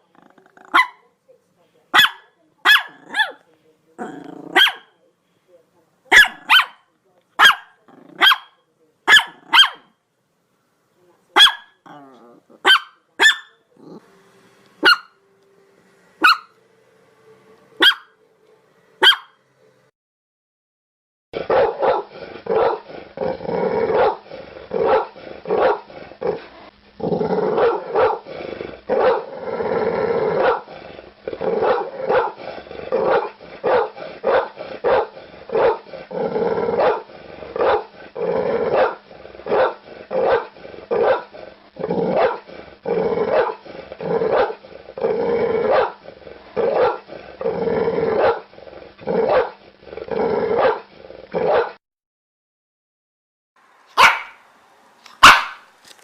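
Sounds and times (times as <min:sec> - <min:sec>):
dog barking: 0:00.6 - 0:01.0, 0:01.9 - 0:03.4, 0:04.5 - 0:05.0, 0:06.1 - 0:09.9, 0:11.4 - 0:11.8, 0:12.6 - 0:13.6, 0:14.8 - 0:15.2, 0:16.2 - 0:16.5, 0:17.8 - 0:18.1, 0:19.0 - 0:19.4, 0:21.4 - 0:22.9, 0:24.0 - 0:24.2, 0:24.8 - 0:25.9, 0:27.6 - 0:28.2, 0:29.0 - 0:29.3, 0:30.4 - 0:30.6, 0:31.6 - 0:32.4, 0:33.0 - 0:35.8, 0:36.8 - 0:37.9, 0:38.7 - 0:41.3, 0:42.2 - 0:42.5, 0:43.3 - 0:43.6, 0:44.3 - 0:44.6, 0:45.7 - 0:46.0, 0:46.7 - 0:47.0, 0:48.2 - 0:48.5, 0:49.3 - 0:49.6, 0:50.6 - 0:50.8, 0:51.4 - 0:51.8, 0:54.0 - 0:54.4, 0:55.2 - 0:55.7.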